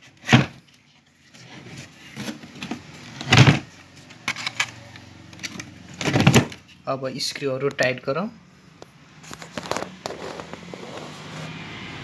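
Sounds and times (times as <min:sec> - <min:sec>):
light knocks and scrapes: 0:09.2 - 0:11.6.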